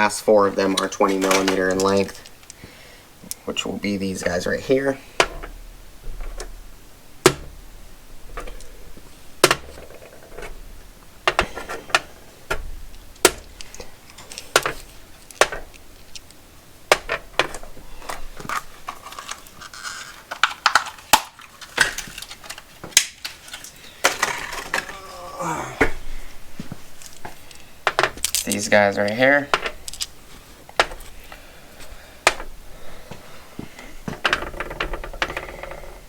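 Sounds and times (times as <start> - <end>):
rustling: 0.0 - 36.0
metal bolts clinking together: 0.6 - 2.6.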